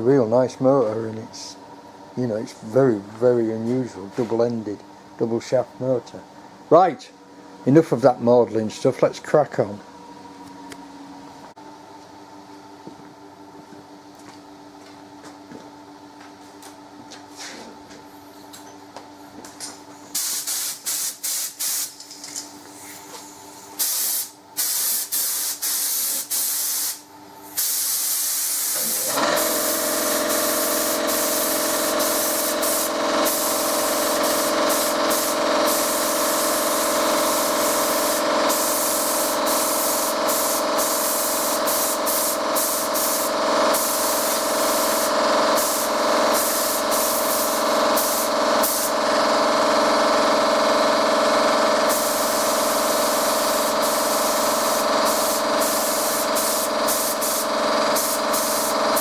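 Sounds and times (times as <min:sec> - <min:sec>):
steady machine hum: 0:00.0 - 0:21.2, 0:27.0 - 0:59.0
spray gun hissing: 0:20.2 - 0:21.9, 0:23.8 - 0:49.5, 0:51.6 - 0:59.0.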